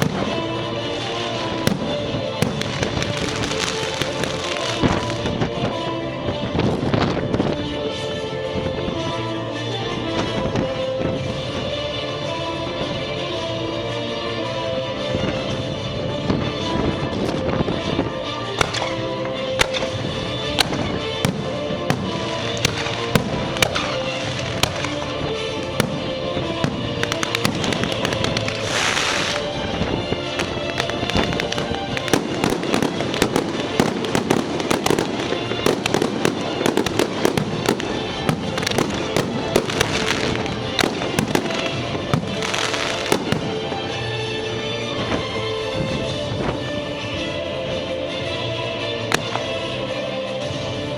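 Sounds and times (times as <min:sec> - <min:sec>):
fireworks hissing: 0:00.0 - 0:05.4, 0:20.6 - 0:44.1
fireworks bangs and crackles: 0:00.0 - 0:12.2, 0:15.1 - 0:47.8, 0:49.1 - 0:50.9
background music: 0:00.0 - 0:50.9.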